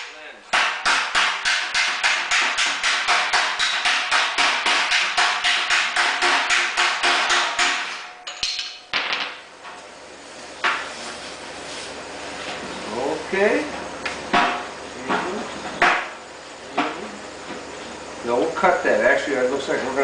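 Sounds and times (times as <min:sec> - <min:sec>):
hammer striking sheet steel: 0:00.5 - 0:08.9.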